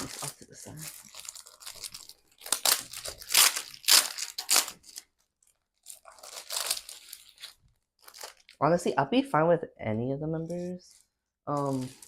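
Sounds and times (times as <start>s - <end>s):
packaging tearing and crinkling: 0.0s - 8.6s, 11.6s - 12.0s.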